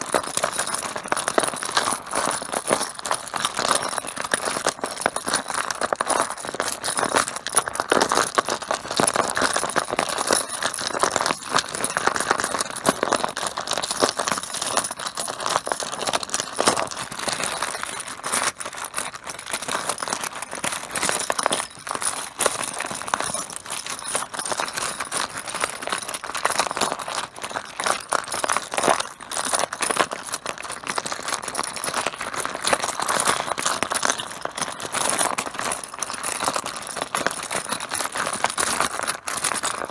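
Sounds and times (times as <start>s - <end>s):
mahjong tiles clattering: 0.0s - 30.3s.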